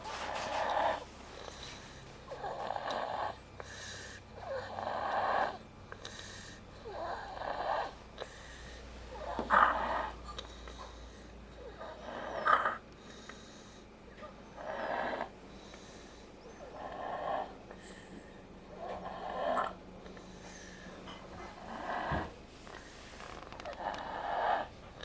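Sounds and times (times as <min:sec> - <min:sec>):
girl snoring: 0:02.3 - 0:06.2, 0:06.8 - 0:08.3, 0:09.1 - 0:10.4, 0:11.6 - 0:12.8, 0:14.6 - 0:15.4, 0:16.6 - 0:17.6, 0:18.7 - 0:19.8, 0:21.6 - 0:22.3, 0:23.6 - 0:24.7.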